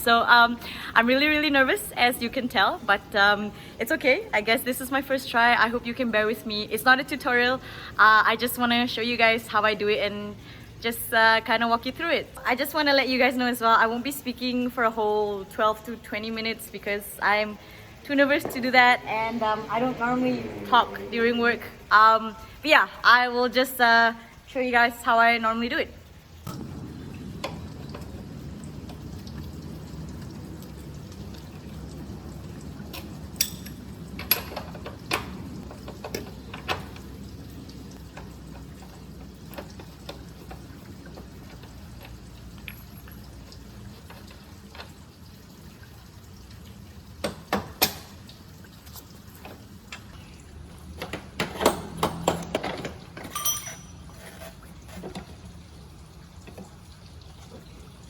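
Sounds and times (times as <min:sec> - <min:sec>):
hand tools clinking on metal: 0:33.4 - 0:35.3, 0:52.3 - 0:54.4.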